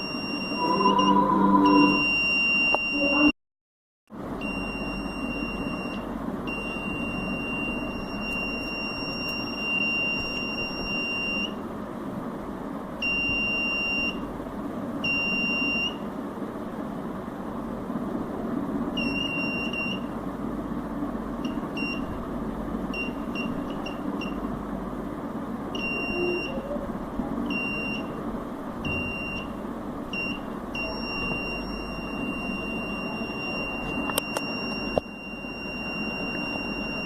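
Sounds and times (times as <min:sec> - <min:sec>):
high-pitched buzzer beeping: 0:00.0 - 0:03.3.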